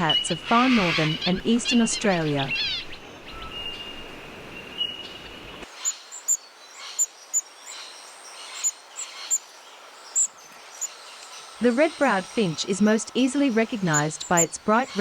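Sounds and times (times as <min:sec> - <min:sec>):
finches calling: 0:00.0 - 0:15.0.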